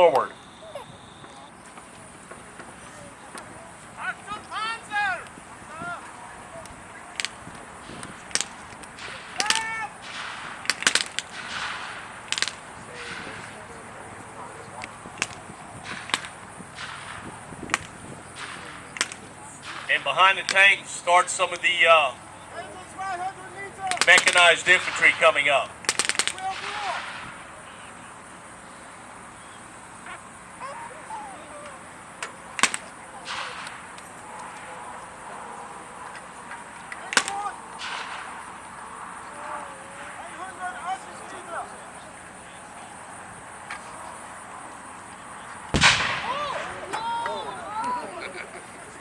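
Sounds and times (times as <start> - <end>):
faint distant calls: 0.0 - 49.0
outdoor background hiss: 0.0 - 49.0
gunshots firing blanks: 1.8 - 28.4, 31.8 - 41.7, 45.6 - 47.6.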